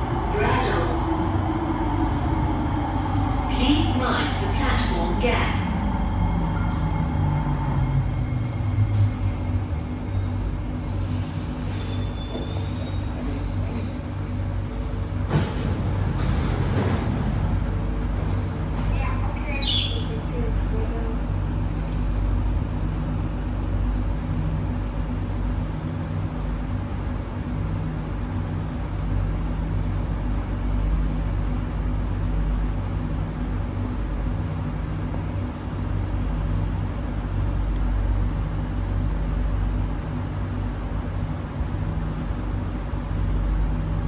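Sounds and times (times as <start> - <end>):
train air-conditioning hum: 0.0 - 44.0
click: 37.7 - 37.9.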